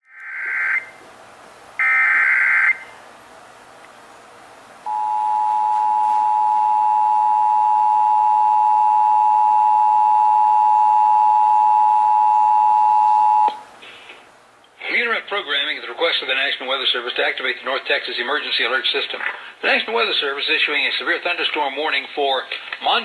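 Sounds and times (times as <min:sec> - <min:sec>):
two-tone alarm: 0:00.2 - 0:01.0, 0:01.8 - 0:02.9, 0:04.9 - 0:13.6.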